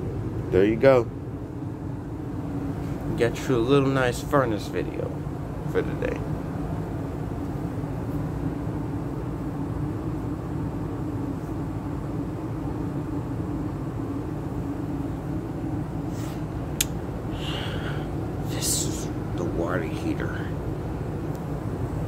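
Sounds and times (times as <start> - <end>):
gas furnace humming: 0.0 - 22.0
sharp click: 16.8 - 17.0.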